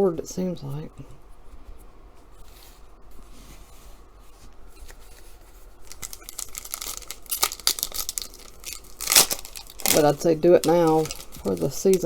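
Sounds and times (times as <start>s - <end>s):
soft handling noises: 0.4s - 12.0s
wrapper crinkling and tearing: 5.8s - 12.0s.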